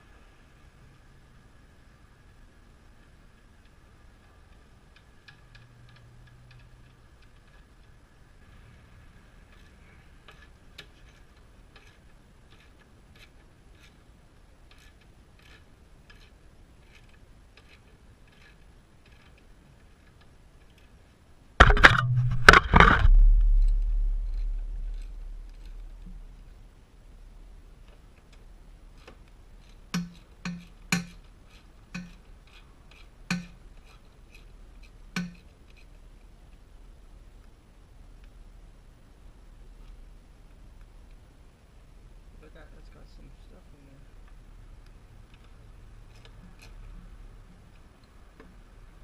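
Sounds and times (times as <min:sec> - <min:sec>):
clatter with low ring: 0:21.6 - 0:25.8.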